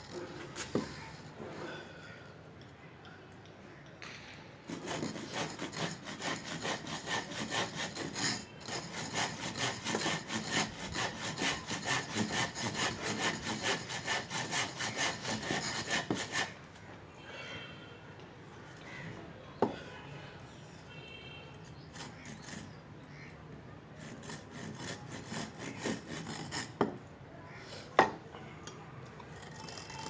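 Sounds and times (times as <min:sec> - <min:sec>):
hand saw cutting wood: 0:00.0 - 0:01.4, 0:04.7 - 0:16.6, 0:21.8 - 0:22.8, 0:24.0 - 0:26.9.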